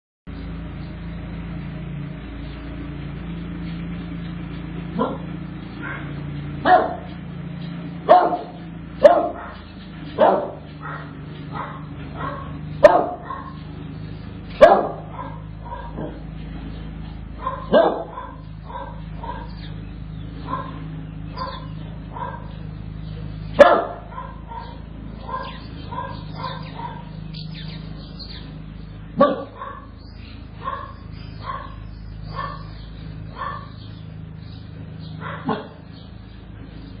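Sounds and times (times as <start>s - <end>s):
distant dogs barking: 0.3s - 37.0s
steady low hum: 0.3s - 37.0s
dog barking sharply: 5.0s - 7.1s, 8.1s - 9.6s, 10.2s - 13.6s, 14.6s - 16.2s, 17.4s - 19.5s, 23.6s - 27.1s, 29.2s - 29.8s.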